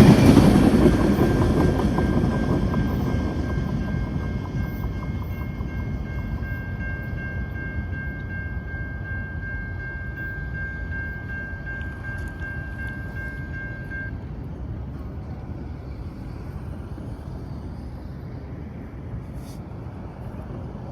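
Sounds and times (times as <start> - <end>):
freight train cars rumbling: 0.0 - 20.9
high ringing tone: 1.0 - 14.2.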